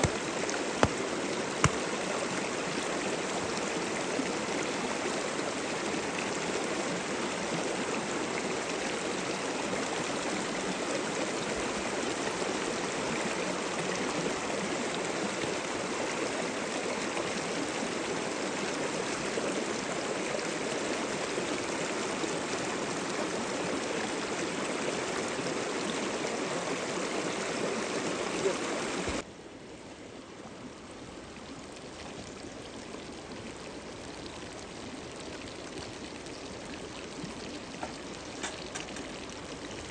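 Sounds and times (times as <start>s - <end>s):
flowing river rushing: 0.0s - 29.2s.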